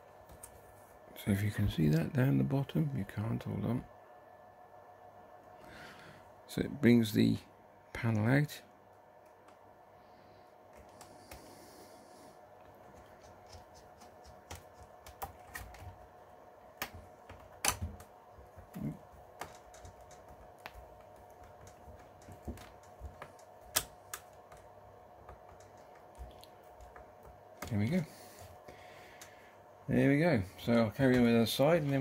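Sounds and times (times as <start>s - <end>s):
faint steady hum: 0.0s - 32.0s
hands tapping on laptop: 12.9s - 16.1s, 16.7s - 27.8s.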